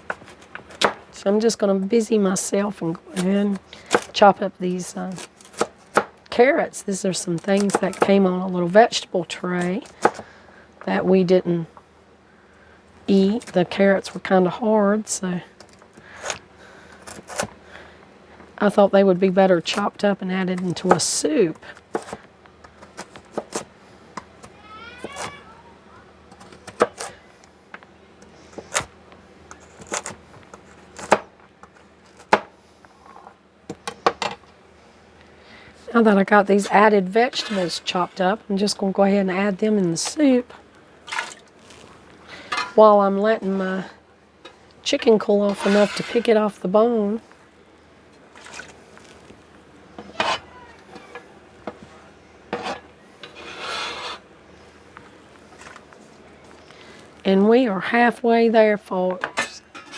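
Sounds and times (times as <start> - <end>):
knife scraping on cutting board: 37.2 - 38.4, 45.5 - 46.4, 50.0 - 50.5, 52.5 - 54.2.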